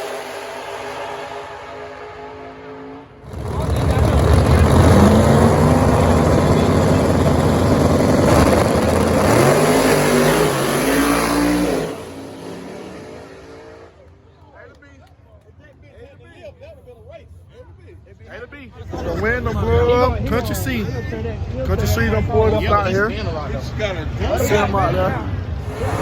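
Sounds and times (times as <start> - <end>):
drag racing car accelerating: 0.0 - 14.2, 25.6 - 26.0.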